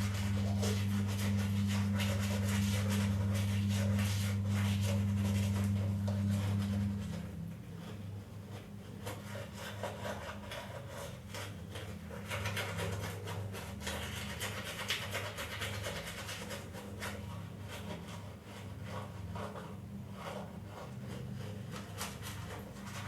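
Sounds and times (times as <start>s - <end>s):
steady low hum: 0.0s - 14.6s
toothbrush scrubbing teeth: 0.0s - 23.0s.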